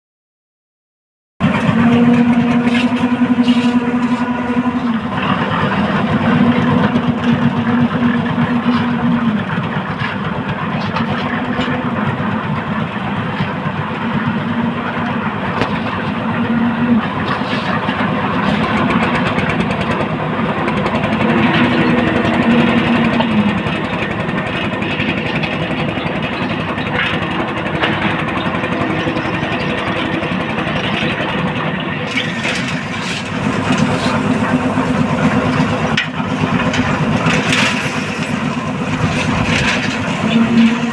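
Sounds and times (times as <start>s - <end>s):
concrete mixer engine running: 1.4s - 40.9s
low drone: 1.4s - 40.9s
dense clatter: 17.0s - 40.9s.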